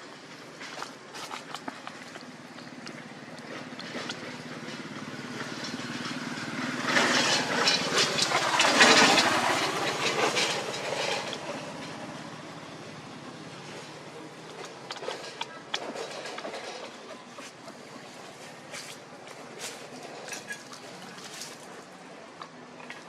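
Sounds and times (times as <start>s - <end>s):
vehicle passing by: 3.1s - 15.5s.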